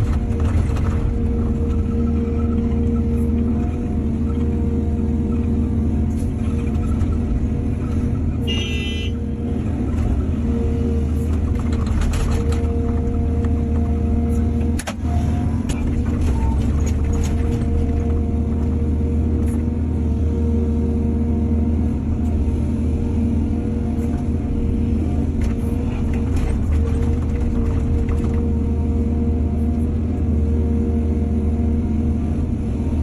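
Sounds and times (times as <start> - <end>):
excavator diesel engine with hydraulic whine: 0.0 - 33.0.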